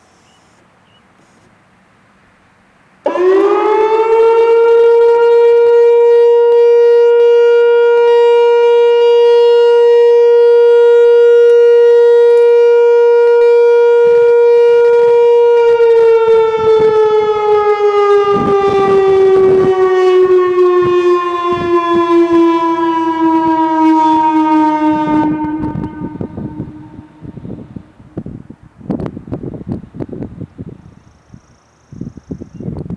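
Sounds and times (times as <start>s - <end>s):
electronic warning siren: 3.1s - 28.3s.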